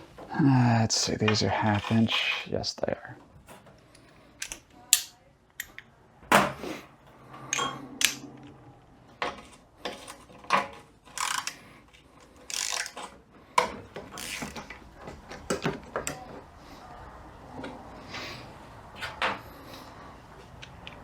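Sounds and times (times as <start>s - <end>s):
ratchet wrench clicking: 4.4s - 5.8s, 7.6s - 8.2s, 11.1s - 11.6s, 12.5s - 13.0s, 14.2s - 14.6s.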